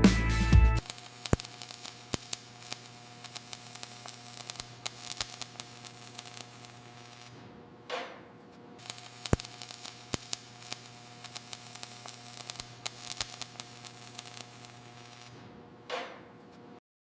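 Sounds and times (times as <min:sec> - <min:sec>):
sharp crackles and clicks: 0:00.8 - 0:07.4, 0:08.8 - 0:15.4
steady electrical hum: 0:00.8 - 0:16.8.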